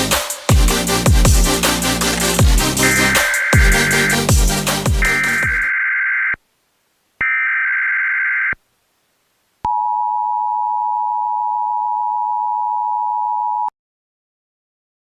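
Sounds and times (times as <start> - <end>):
two-tone attention signal: 2.8 - 4.2, 5.0 - 5.9
warbling digital header bursts: 2.8 - 5.9.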